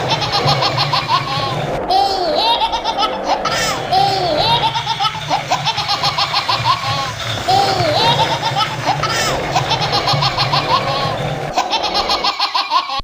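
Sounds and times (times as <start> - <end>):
steady low hum: 0.0 - 12.5
baby giggling: 0.0 - 13.0.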